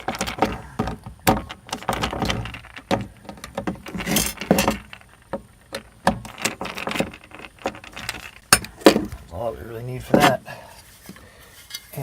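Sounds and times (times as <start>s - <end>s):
hard parts clicking and clinking: 0.0s - 9.4s
scraping rustle: 1.4s - 12.0s.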